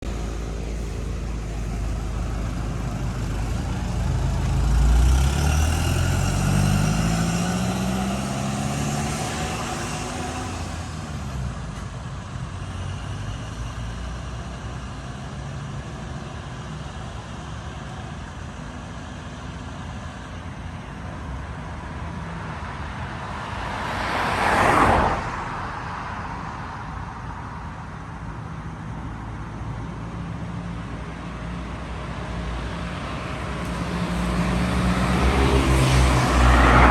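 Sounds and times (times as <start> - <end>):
vehicle passing by: 0.0 - 11.4, 23.5 - 26.4, 32.6 - 36.9
vehicle engine accelerating: 0.0 - 11.9, 32.6 - 36.9
road traffic noise: 0.0 - 36.9.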